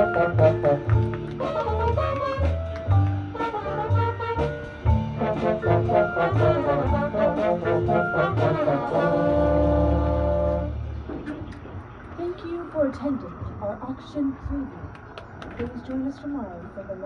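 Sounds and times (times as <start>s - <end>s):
brass section playing: 0.0s - 10.9s
low brass bass line: 0.0s - 11.1s.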